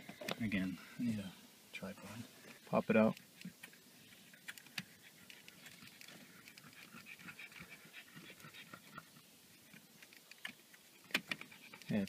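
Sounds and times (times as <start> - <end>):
panting breaths: 4.3 - 9.4.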